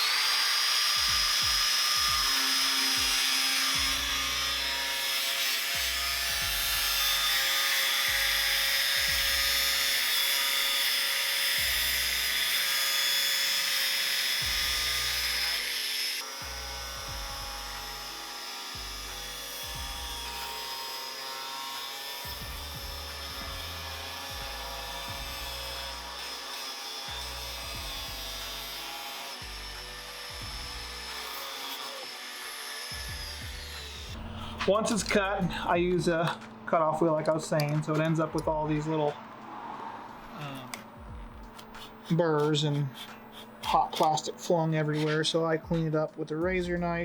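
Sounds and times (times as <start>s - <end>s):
angle grinder cutting plastic: 0.0s - 35.3s.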